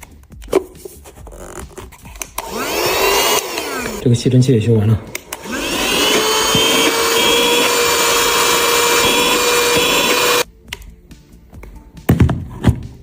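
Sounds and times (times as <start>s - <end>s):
vacuum cleaner motor whining: 2.4s - 4.0s, 5.2s - 10.4s.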